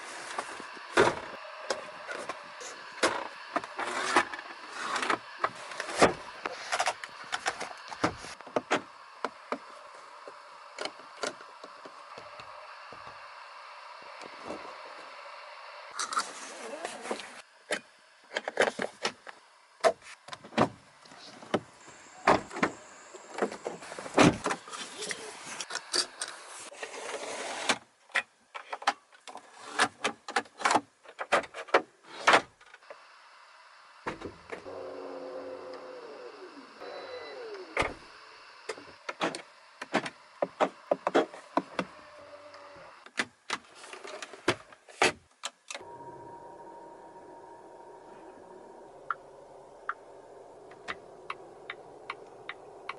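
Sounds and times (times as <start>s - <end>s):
electric motor whining: 0.2s - 17.5s, 32.9s - 43.1s, 45.7s - 52.9s
steady hiss: 45.7s - 52.9s.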